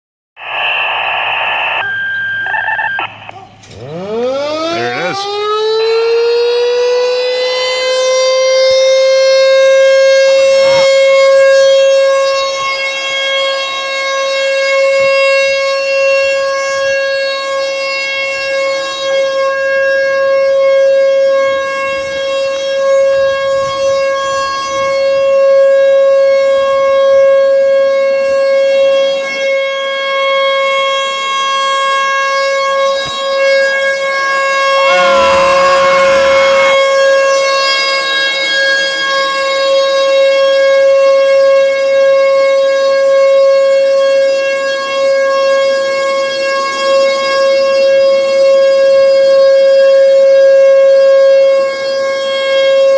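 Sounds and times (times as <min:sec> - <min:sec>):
two-way radio tones: 0:00.4 - 0:05.4, 0:34.8 - 0:37.1
emergency warning siren: 0:00.4 - 0:52.9.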